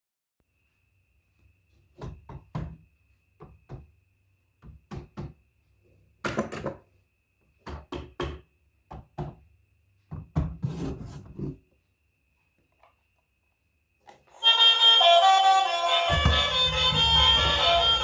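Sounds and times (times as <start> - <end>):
knocks and taps of toys: 4.6 - 5.4, 7.6 - 9.4.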